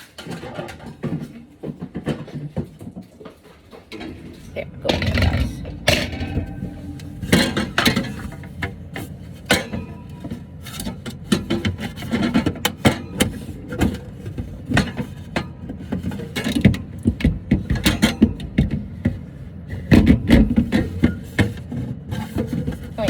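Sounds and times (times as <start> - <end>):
knocks and clatter of handling: 0.0 - 23.0
low rumble: 3.9 - 10.6.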